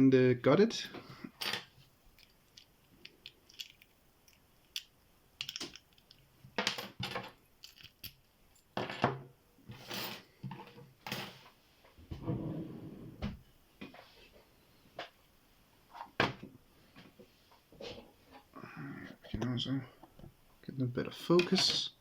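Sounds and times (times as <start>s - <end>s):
padlock and lock picks clicking: 2.2s - 6.2s.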